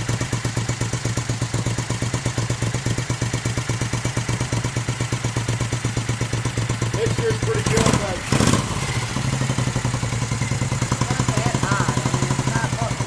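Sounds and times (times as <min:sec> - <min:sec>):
motorcycle engine idling: 0:00.0 - 0:13.0.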